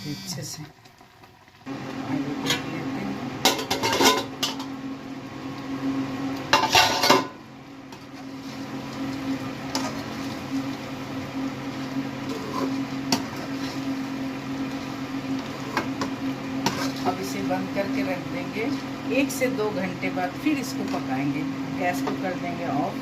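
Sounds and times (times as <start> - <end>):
steady low hum: 1.6 - 23.0
metal pot and lid clattering: 3.4 - 4.7, 6.5 - 7.4
stirring and scraping in a pot: 6.5 - 7.3, 7.9 - 11.0, 11.6 - 17.4.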